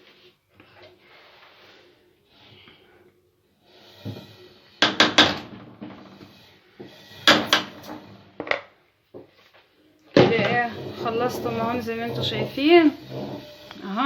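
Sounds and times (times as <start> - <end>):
kitchen items knocking and clattering: 4.8 - 6.4, 7.3 - 8.7, 10.1 - 13.4.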